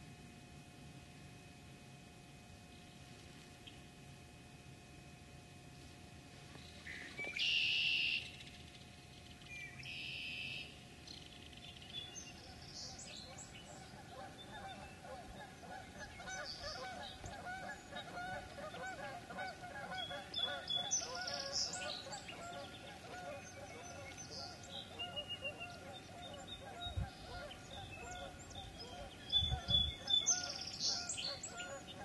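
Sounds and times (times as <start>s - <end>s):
geese honking: 12.8s - 32.0s
harsh high-pitched bird calls: 19.9s - 32.0s.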